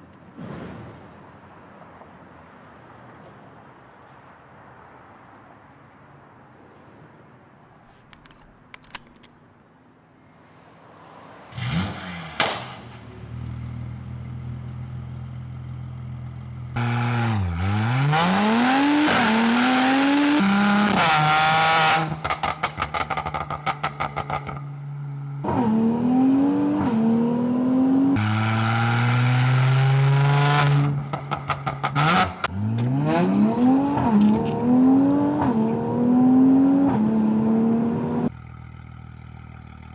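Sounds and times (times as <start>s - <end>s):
car engine starting and idling: 10.4s - 39.9s
exhaust crackles: 10.5s - 39.9s
engine revving: 11.0s - 39.9s.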